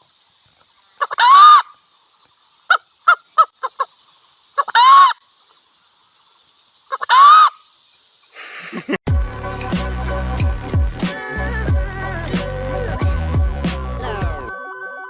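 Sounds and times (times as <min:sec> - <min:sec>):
hen clucking: 0:01.0 - 0:01.8, 0:02.7 - 0:03.9, 0:04.6 - 0:05.2, 0:06.9 - 0:07.6
hen honking calls: 0:04.6 - 0:05.2.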